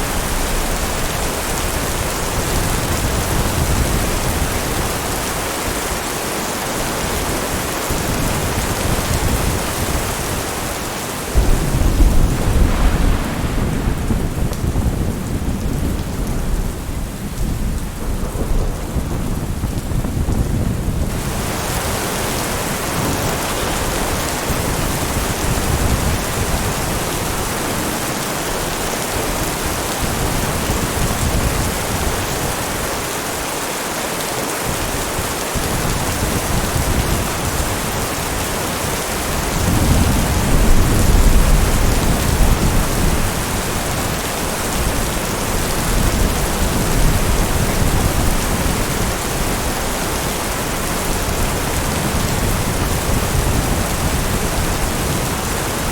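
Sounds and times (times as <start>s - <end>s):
thunder rumbling: 0.0s - 5.8s, 6.9s - 32.8s, 34.8s - 55.9s
heavy rain: 0.0s - 55.9s.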